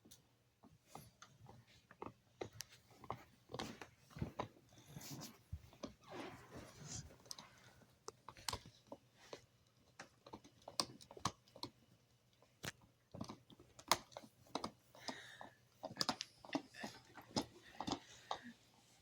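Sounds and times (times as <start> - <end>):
dog gnawing on a hard chew: 8.1 - 18.5.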